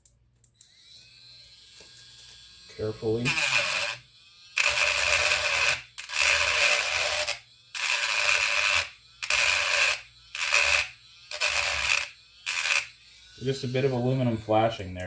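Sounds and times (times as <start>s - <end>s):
hand tool scraping aluminum: 3.1s - 4.0s, 4.6s - 14.8s.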